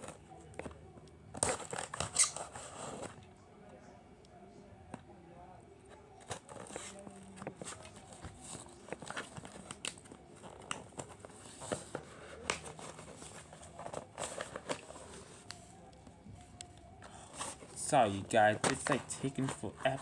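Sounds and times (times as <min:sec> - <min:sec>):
cardboard crinkling and tearing: 0:01.4 - 0:03.2, 0:06.3 - 0:20.0.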